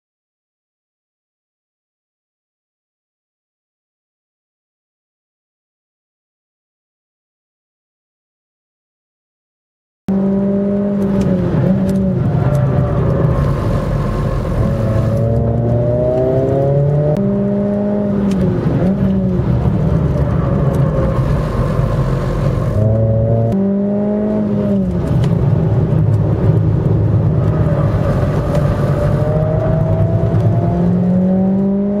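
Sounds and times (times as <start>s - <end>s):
buzzing differential noise: 10.1s - 32.0s
car engine revving: 10.1s - 32.0s.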